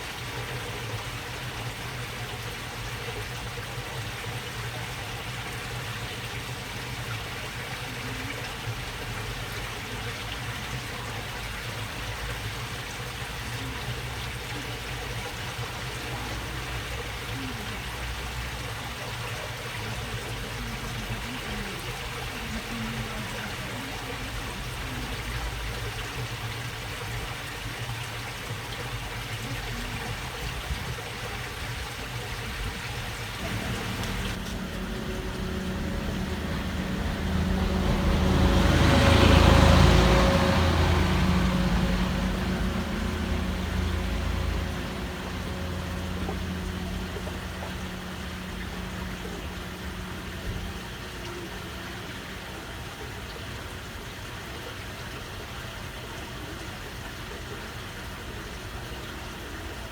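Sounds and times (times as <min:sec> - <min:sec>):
water trickling: 0:00.0 - 0:59.9
vehicle engine passing by: 0:33.2 - 0:52.8.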